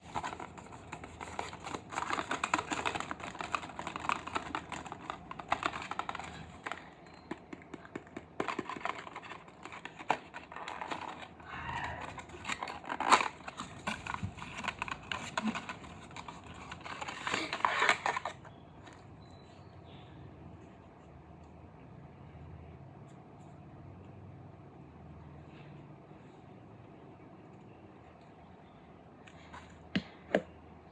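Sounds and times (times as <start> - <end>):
packaging crinkling and tearing: 0.0 - 6.9, 7.8 - 18.5.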